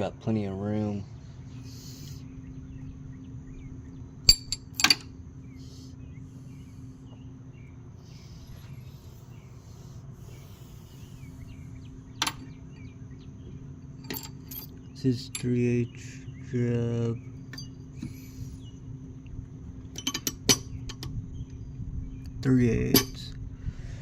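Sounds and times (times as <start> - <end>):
steady low hum: 0.0 - 24.0
tools clicking and clanking: 4.3 - 5.1, 12.2 - 12.9, 13.8 - 15.8, 16.7 - 18.2, 19.8 - 21.2, 22.8 - 23.4.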